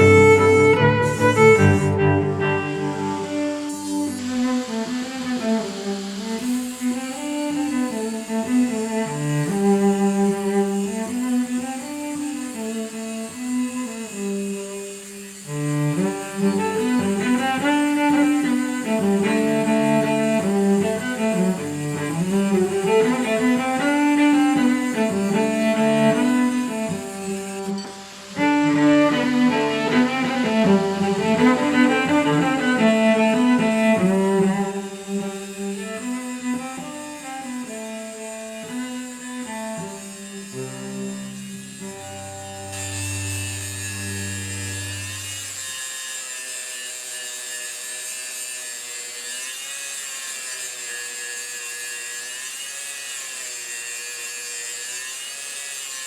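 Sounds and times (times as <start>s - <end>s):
instrumental background music: 0.0s - 5.3s.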